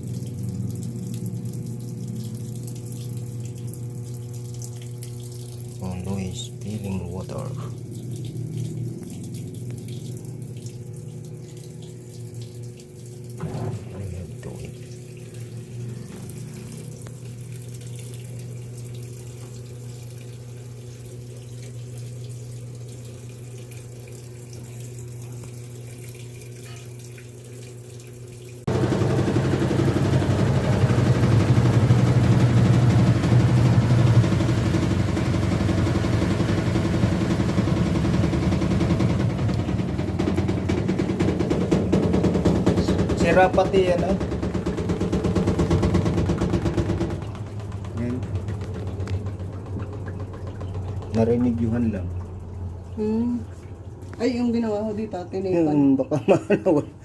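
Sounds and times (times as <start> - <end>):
electric hum: 0.0 - 57.0
water running in washing machine: 0.0 - 57.0.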